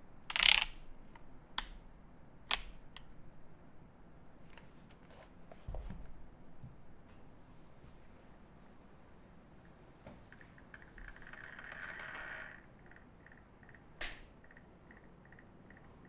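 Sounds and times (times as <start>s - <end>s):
sharp click: 14.0s - 14.3s.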